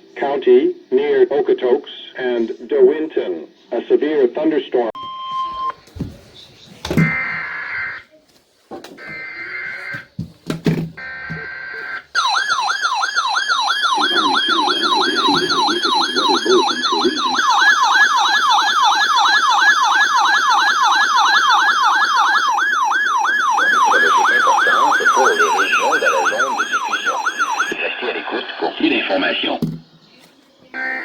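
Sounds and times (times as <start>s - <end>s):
warbling siren alarm: 11.0s - 27.8s
buzzy digital header bursts: 12.9s - 18.5s, 23.0s - 27.8s.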